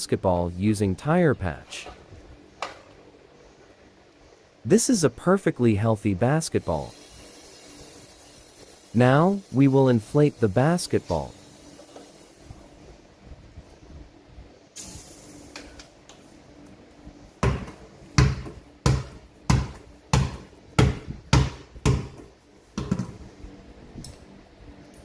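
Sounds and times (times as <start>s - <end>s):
brief air hiss: 14.8s - 15.8s
basketball bouncing on hard floor: 17.4s - 23.2s.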